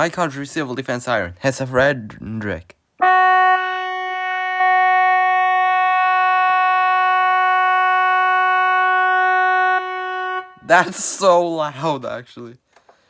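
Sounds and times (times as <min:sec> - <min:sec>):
electronic keyboard siren tone: 0:03.0 - 0:10.9.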